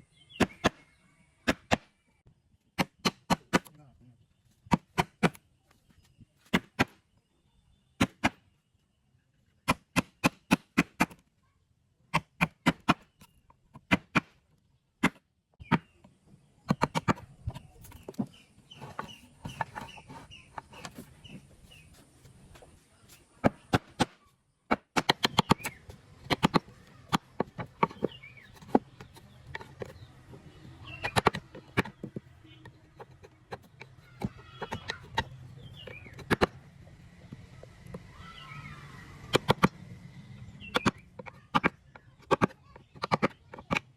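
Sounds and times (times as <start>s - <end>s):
background noise: 0.0s - 43.9s
hand tool striking wood: 23.4s - 32.2s.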